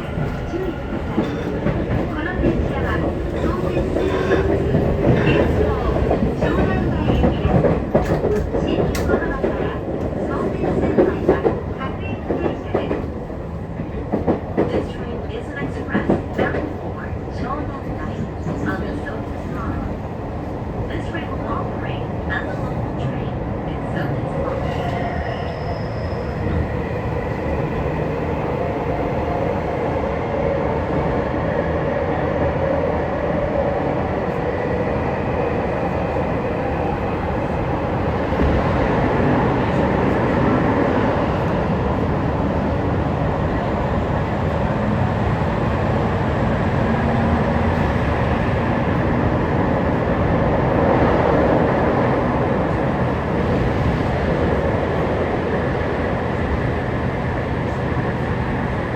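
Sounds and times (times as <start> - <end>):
train wheels rumbling on rail: 0.0 - 58.9.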